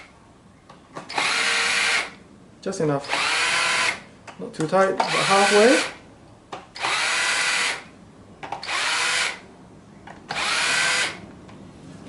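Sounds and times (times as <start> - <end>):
cordless drill driving screws: 1.1 - 2.2, 3.0 - 4.0, 5.0 - 6.0, 6.8 - 7.9, 8.5 - 9.4, 10.3 - 11.2.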